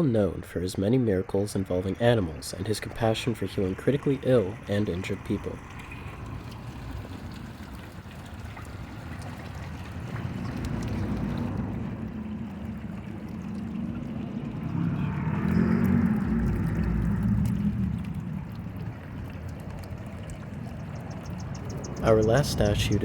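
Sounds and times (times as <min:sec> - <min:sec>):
fountain water trickling: 0:00.0 - 0:23.0
passing traffic rumble: 0:02.0 - 0:23.0.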